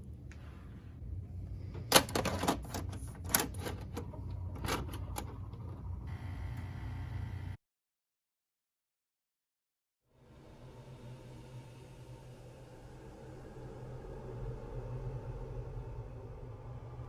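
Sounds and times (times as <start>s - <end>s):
low steady hum: 0.0s - 7.6s.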